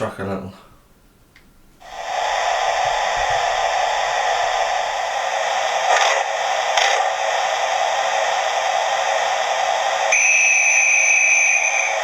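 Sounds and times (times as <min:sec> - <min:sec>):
steam locomotive hiss from speaker: 0:01.8 - 0:12.0.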